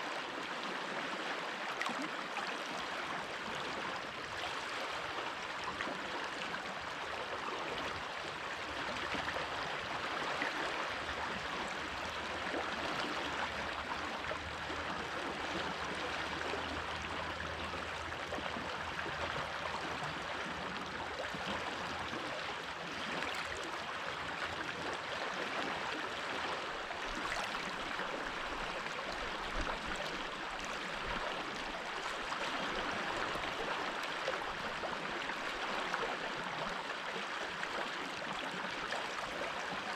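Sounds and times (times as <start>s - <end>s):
stream babbling over stones: 6.7s - 39.9s.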